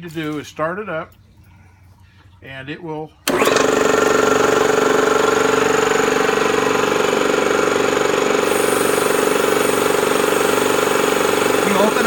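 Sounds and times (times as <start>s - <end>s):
air compressor running: 3.2s - 12.0s
high hiss: 8.4s - 12.0s.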